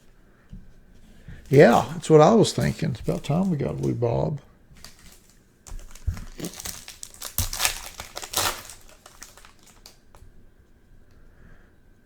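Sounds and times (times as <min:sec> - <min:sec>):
wrapper crinkling and tearing: 0:01.5 - 0:10.2.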